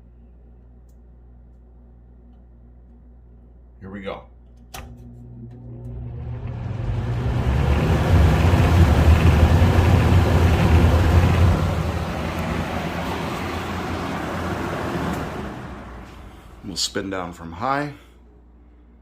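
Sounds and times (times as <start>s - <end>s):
box fan running: 4.6s - 19.0s.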